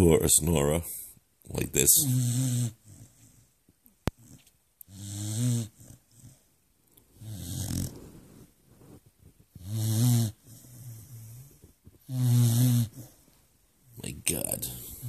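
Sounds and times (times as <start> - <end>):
dog snoring: 1.8 - 3.5, 4.2 - 6.5, 7.2 - 8.5, 9.4 - 13.3.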